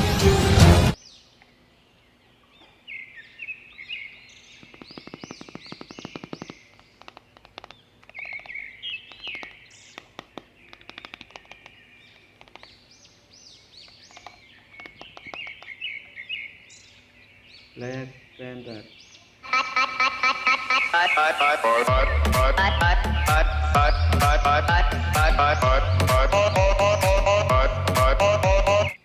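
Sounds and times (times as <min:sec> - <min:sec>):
birds chirping: 0:01.0 - 0:29.0
rapid sharp clicks: 0:04.6 - 0:12.8, 0:13.8 - 0:15.8.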